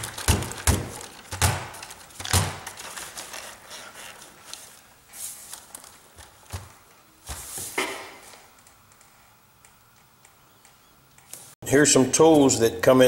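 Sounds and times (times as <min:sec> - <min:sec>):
rustling handling noises: 0:00.0 - 0:08.5.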